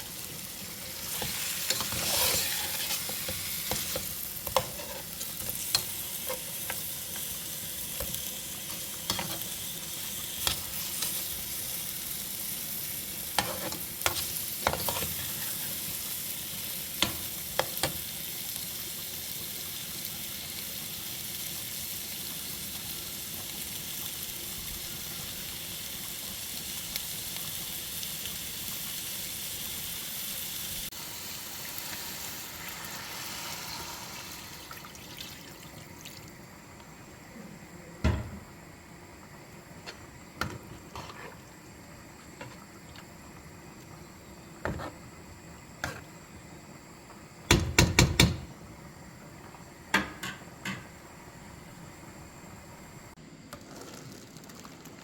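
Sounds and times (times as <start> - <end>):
cooking pan hissing: 0.0 - 54.9.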